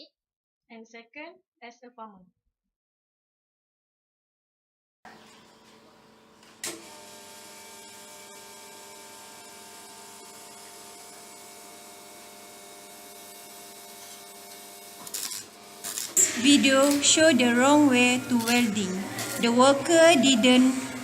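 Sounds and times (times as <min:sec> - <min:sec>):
electrical machine humming: 0:05.1 - 0:21.0.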